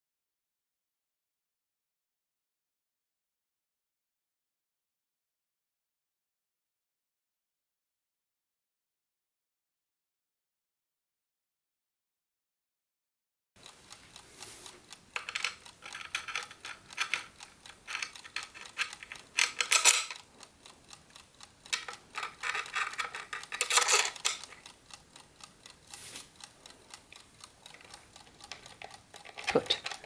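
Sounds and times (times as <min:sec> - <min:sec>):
small wooden clicks and knocks: 0:15.2 - 0:20.2, 0:21.7 - 0:24.7, 0:27.7 - 0:30.0
scratchy scraping: 0:22.2 - 0:24.6.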